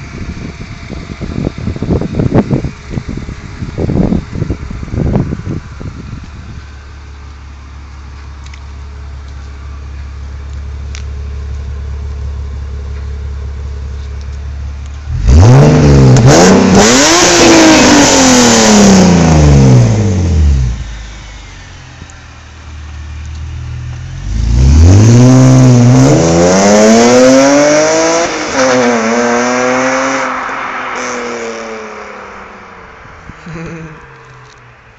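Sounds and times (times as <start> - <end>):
car engine revving: 8.4 - 34.6.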